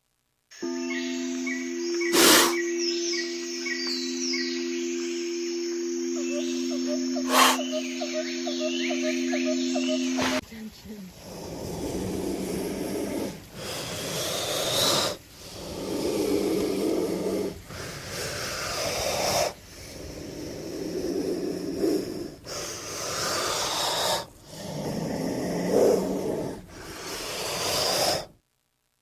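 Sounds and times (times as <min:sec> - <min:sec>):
snake hissing: 0:02.0 - 0:02.8, 0:06.1 - 0:28.4.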